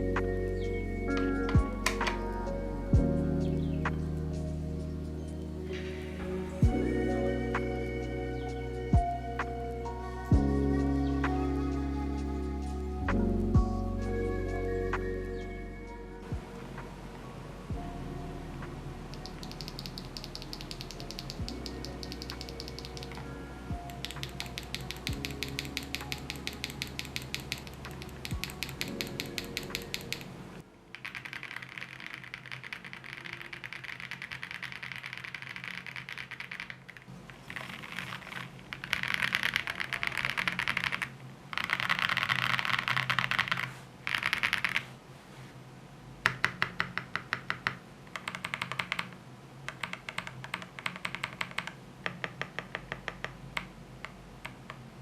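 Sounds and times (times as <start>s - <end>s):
mechanical keyboard typing: 19.1s - 23.2s, 23.9s - 30.3s, 30.9s - 44.9s, 46.3s - 54.8s.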